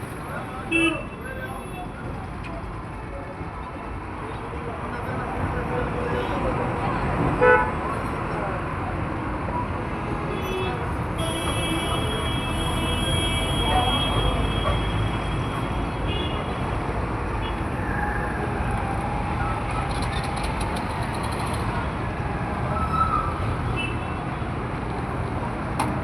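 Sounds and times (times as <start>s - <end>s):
busy road traffic: 0.0s - 26.0s
vehicle horns: 11.2s - 16.5s.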